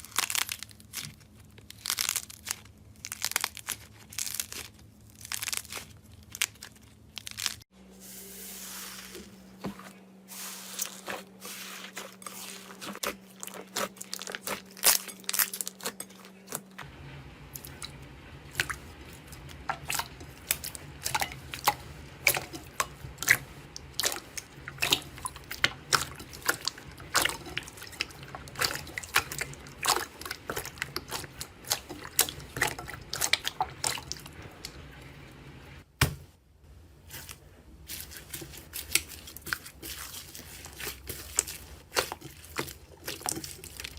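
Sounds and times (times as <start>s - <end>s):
hands squeezing slime: 0.0s - 7.6s, 10.3s - 16.6s, 18.5s - 34.7s, 37.1s - 43.9s
low hum: 16.2s - 35.8s.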